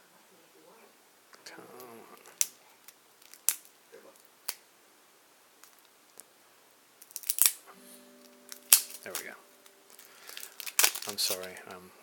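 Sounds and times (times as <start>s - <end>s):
cards and packaging clicking: 2.3s - 3.8s, 7.0s - 7.6s, 9.9s - 11.6s.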